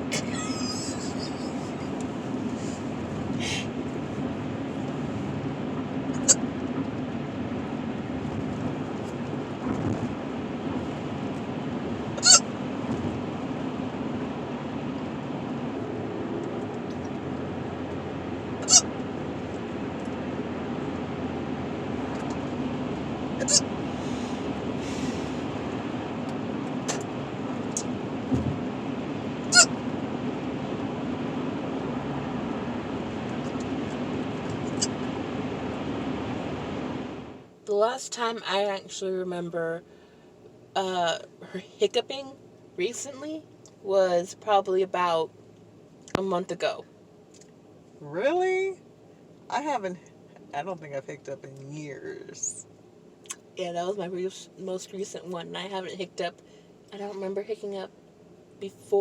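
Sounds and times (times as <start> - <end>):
car road and engine hum: 0.0 - 59.0
woman hiccuping: 12.2 - 12.4, 18.6 - 18.9, 23.4 - 23.7.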